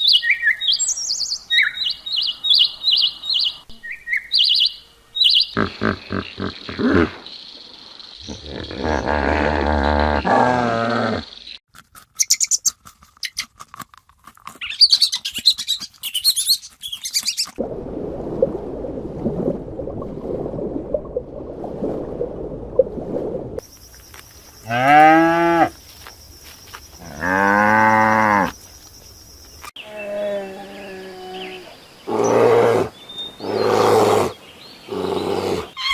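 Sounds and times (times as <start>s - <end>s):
rough noisy animal calling: 5.3s - 7.2s, 29.8s - 35.9s
pitched animal call: 5.4s - 7.2s, 29.8s - 34.3s, 34.9s - 35.9s
animal clicking and high chirping: 11.7s - 17.6s.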